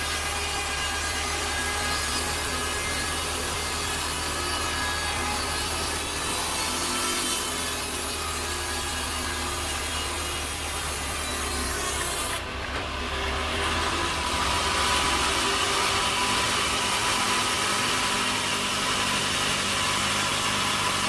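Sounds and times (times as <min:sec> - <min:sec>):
powered saw cutting log: 0:00.0 - 0:21.0.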